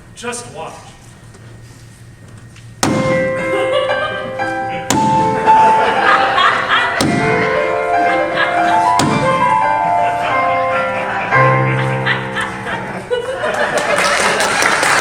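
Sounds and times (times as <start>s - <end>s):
instrumental music with accented chords: 3.0s - 13.2s.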